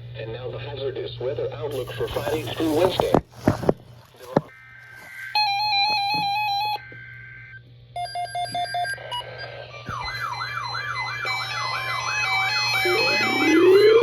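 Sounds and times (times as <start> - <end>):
swooping siren-like alarm tone: 4.6 - 7.6, 9.9 - 14.0
rapid pulsed beeps: 5.4 - 14.0
chopped beeps: 9.9 - 14.0.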